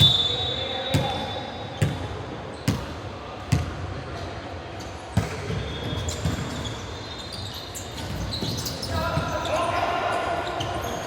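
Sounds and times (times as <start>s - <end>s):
basketball bouncing on gym floor: 1.8s - 2.1s, 3.5s - 3.8s.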